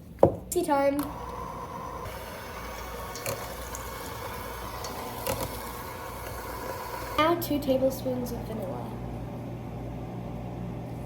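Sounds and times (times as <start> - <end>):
water running from a tap: 1.0 - 8.6.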